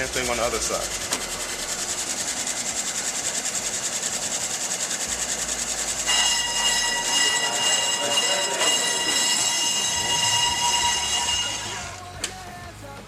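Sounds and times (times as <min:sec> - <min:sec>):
brake lathe running: 0:00.0 - 0:12.4
high-pitched cutting squeal: 0:05.5 - 0:12.1.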